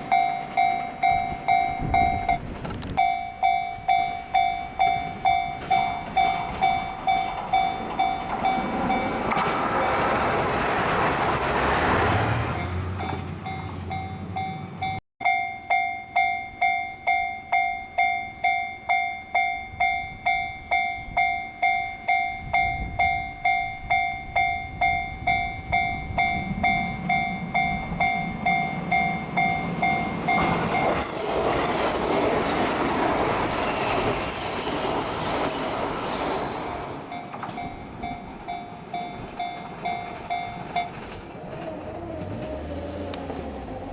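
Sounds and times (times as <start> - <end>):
level-crossing warning bell: 0.0 - 2.4, 3.0 - 9.4, 12.5 - 31.0, 37.1 - 41.2
train rumble and rail noise: 0.0 - 15.0, 19.3 - 43.9.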